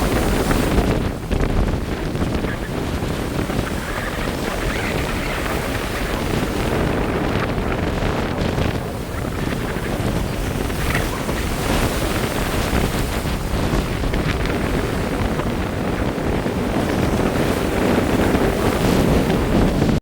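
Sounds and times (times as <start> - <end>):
surf washing onto beach: 0.0 - 20.0
wind buffeting microphone: 0.0 - 20.0.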